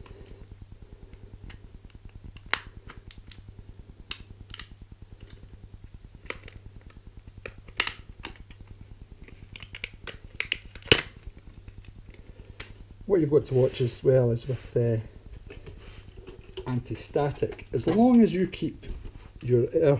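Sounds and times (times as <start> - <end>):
steady low hum: 0.0 - 19.9
plastic packaging crackling: 6.2 - 12.8.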